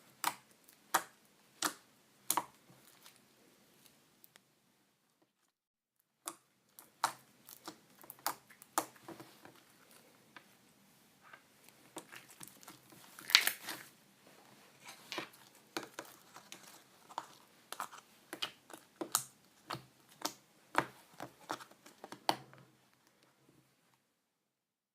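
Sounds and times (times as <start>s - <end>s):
slime squishing with sticky clicks: 0.1s - 3.2s, 6.2s - 9.1s, 11.6s - 13.8s, 15.1s - 22.5s.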